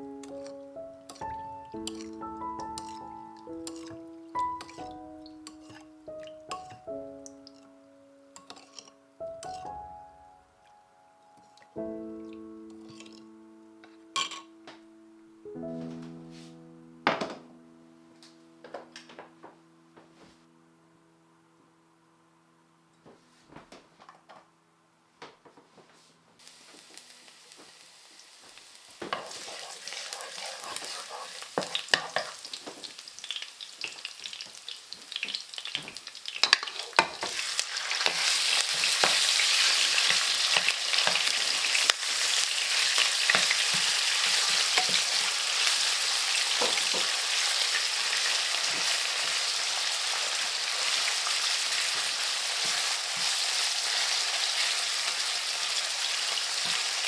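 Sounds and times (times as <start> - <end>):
food sizzling in hot oil: 0.0 - 7.7, 8.4 - 9.8, 26.4 - 57.0
utensil stirring and knocking pan: 0.2 - 7.6, 8.4 - 9.8, 12.7 - 13.3, 14.2 - 14.5, 29.0 - 55.3.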